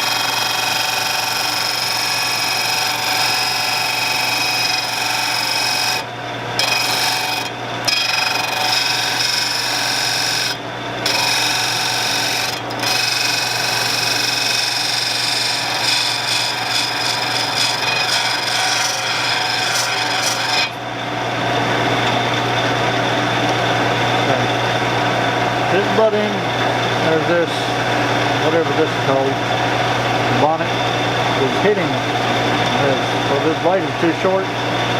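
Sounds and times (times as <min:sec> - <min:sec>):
tool grinding on abrasive wheel: 0:00.0 - 0:24.8
motor hum: 0:00.0 - 0:34.9.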